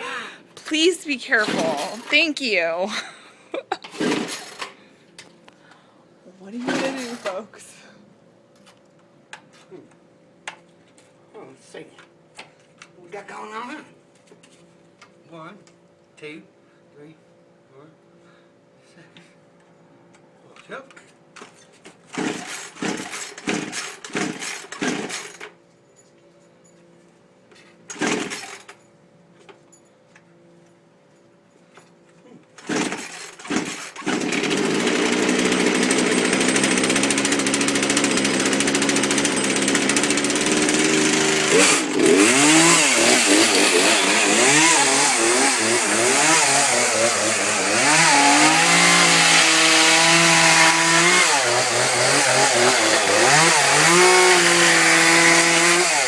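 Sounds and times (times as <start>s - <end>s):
chainsaw engine revving: 3.9s - 4.6s, 22.1s - 25.5s, 27.9s - 28.6s, 32.6s - 56.0s.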